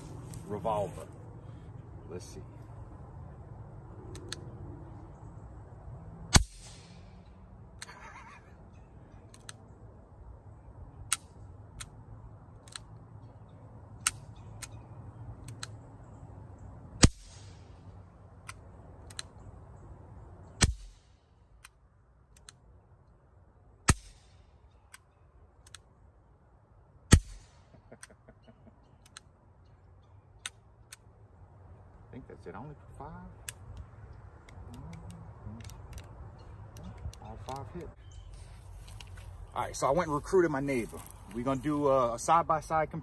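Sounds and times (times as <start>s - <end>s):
faint sharp clicks: 4.1s - 4.5s, 15.4s - 15.8s, 18.4s - 19.4s, 21.6s - 23.2s, 24.9s - 25.9s, 29.0s - 29.3s, 33.4s - 36.1s
suppressed revolver shots: 6.3s - 7.1s, 20.6s - 21.1s, 27.1s - 27.6s.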